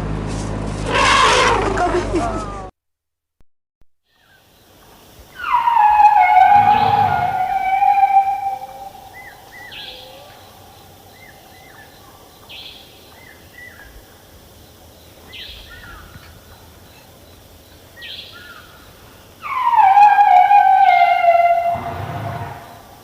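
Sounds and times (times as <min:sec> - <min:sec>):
faint outdoor ambience: 0:00.0 - 0:02.7, 0:04.0 - 0:23.0
bird chirping: 0:04.1 - 0:14.0.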